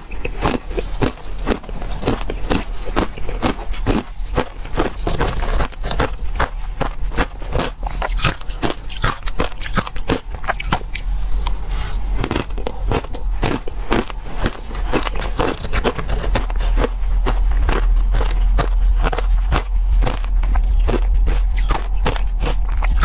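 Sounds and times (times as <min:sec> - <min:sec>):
chewing crunchy shaved ice: 0:00.0 - 0:23.0.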